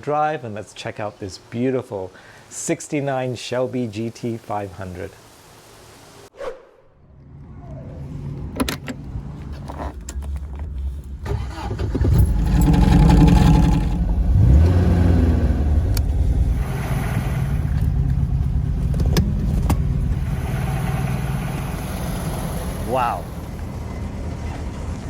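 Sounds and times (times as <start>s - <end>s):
car engine pulling away: 7.2s - 25.0s.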